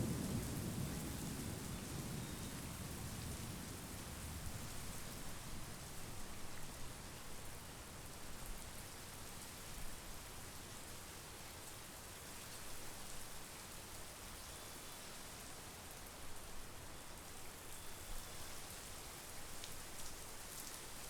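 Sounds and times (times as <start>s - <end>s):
rain spatters: 0.0s - 13.9s
steady rain hiss: 0.0s - 21.0s.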